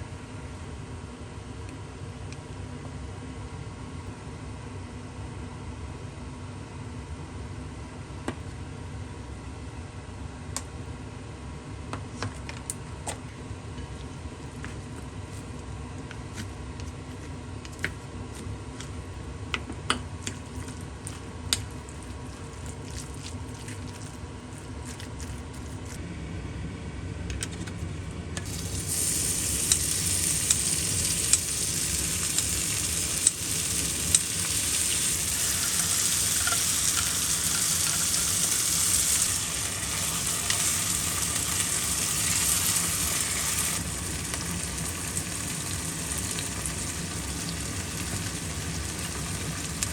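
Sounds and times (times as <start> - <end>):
food sizzling in a frying pan: 28.4 - 49.9
utensil clicking against pan: 34.0 - 38.5.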